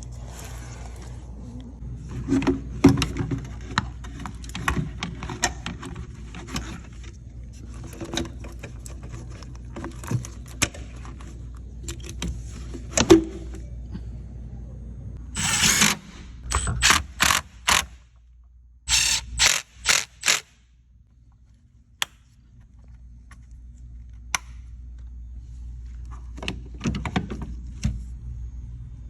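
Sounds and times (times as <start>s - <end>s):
ratchet wrench spinning: 18.9s - 20.5s.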